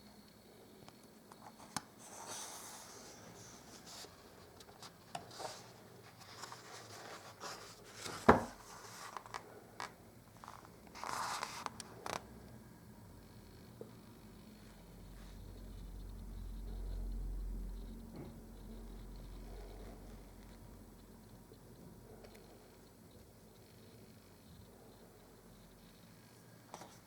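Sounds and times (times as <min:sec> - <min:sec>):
rustling and scraping: 0:01.4 - 0:12.2.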